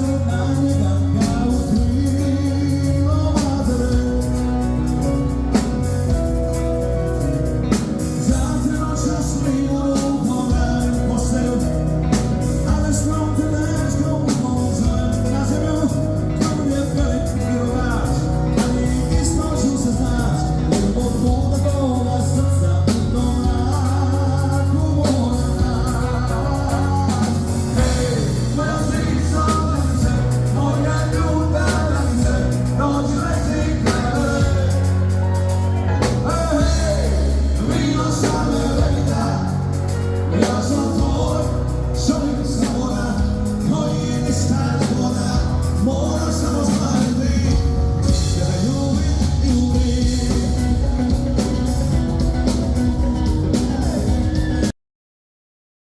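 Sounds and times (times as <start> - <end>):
heavy bass: 0.0 - 54.7
rock song with singing: 0.0 - 54.7
steady drum beat: 0.0 - 54.7.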